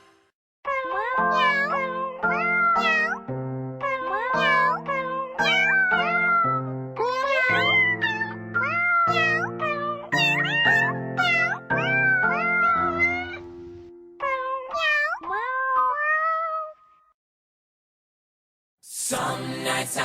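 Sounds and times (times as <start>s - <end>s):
pitched cat meows tune: 0.6s - 17.1s
keyboard chords: 1.8s - 3.8s, 5.6s - 7.0s, 9.5s - 14.2s.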